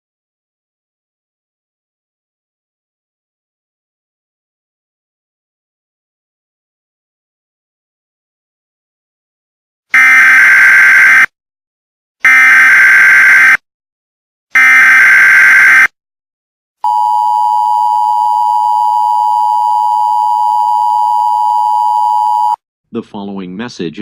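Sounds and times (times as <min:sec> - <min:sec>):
screeching digital header tones: 0:10.0 - 0:11.3, 0:12.3 - 0:13.6, 0:14.6 - 0:15.9.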